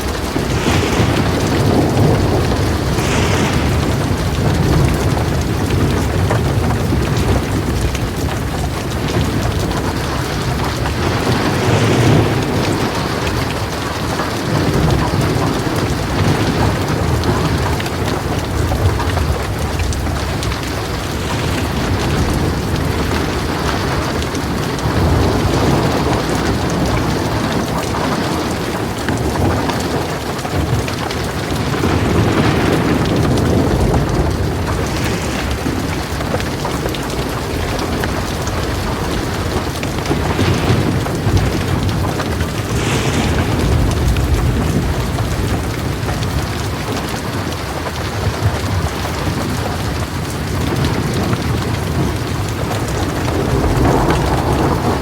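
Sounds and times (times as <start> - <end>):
heavy rain: 0.0 - 55.0
low rolling thunder: 0.0 - 55.0.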